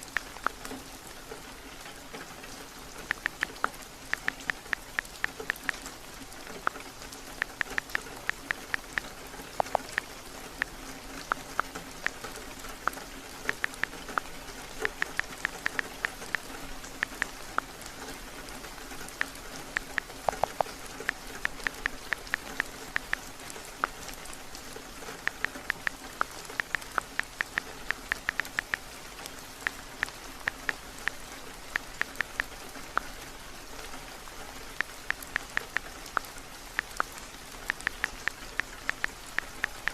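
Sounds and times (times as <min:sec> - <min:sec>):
heavy rain: 0:00.0 - 0:39.9
phone keyboard typing taps: 0:03.1 - 0:05.8, 0:07.4 - 0:10.7, 0:12.8 - 0:16.4, 0:19.2 - 0:23.2, 0:25.3 - 0:28.9, 0:30.0 - 0:31.2, 0:34.8 - 0:37.1, 0:37.7 - 0:39.9.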